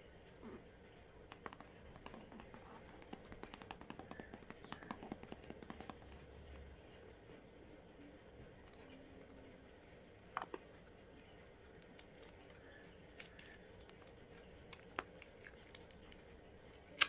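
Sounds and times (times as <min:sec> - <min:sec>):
fingers tapping cardboard box: 0:01.3 - 0:06.4.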